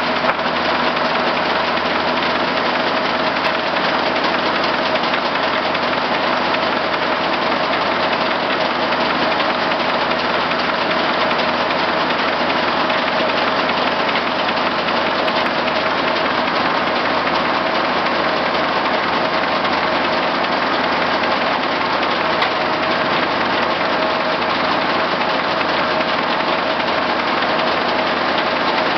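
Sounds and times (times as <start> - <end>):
engine running steadily: 0.0 - 28.9.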